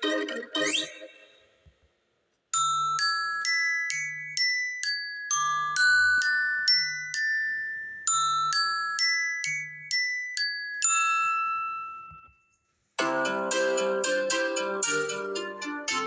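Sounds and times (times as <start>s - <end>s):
bell-like mallet ringtone melody: 2.6s - 12.4s, 13.0s - 16.0s.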